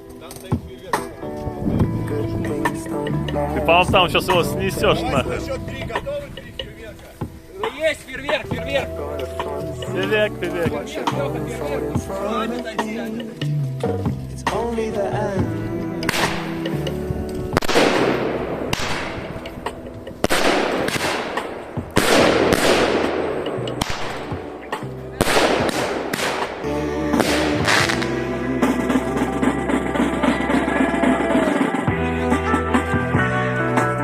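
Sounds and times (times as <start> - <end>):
background music with bass: 0.0 - 34.0
fireworks bangs and crackling: 14.5 - 29.3.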